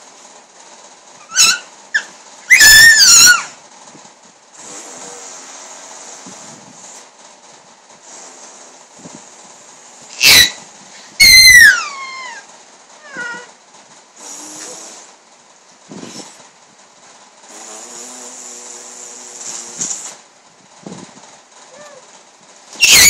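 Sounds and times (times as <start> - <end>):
high falling squeal: 22.8 - 23.0.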